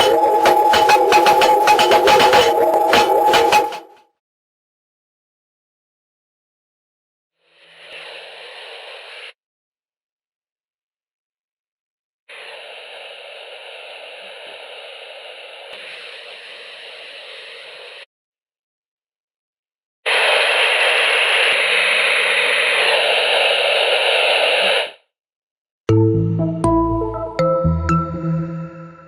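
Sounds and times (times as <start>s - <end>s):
ultrasound detector hiss: 7.5s - 9.4s, 12.3s - 18.1s, 20.1s - 25.0s.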